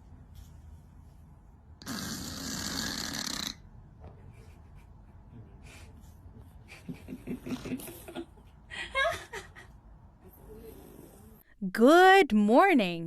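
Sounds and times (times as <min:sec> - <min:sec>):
person snoring: 0:01.8 - 0:03.6, 0:10.4 - 0:11.4.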